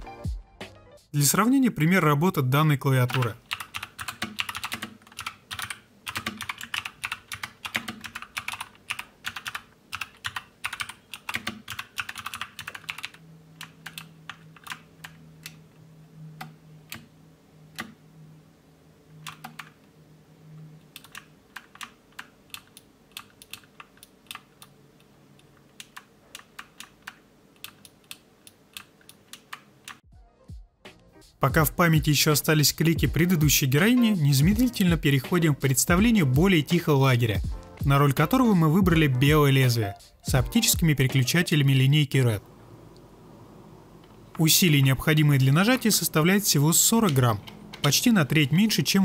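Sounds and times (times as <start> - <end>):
clicky mechanical keyboard typing: 3.0 - 15.6, 19.2 - 19.8, 20.9 - 30.0.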